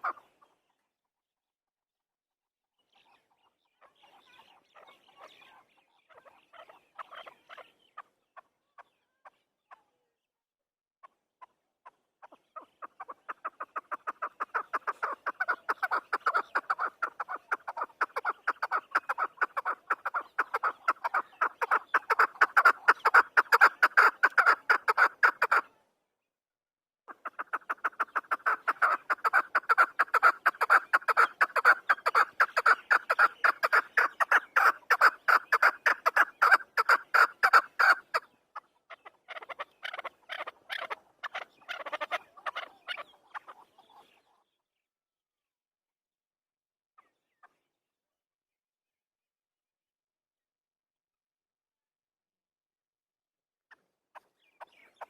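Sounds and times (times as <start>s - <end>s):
partridge calling chuck notes: 12.3s - 25.7s, 27.1s - 44.2s.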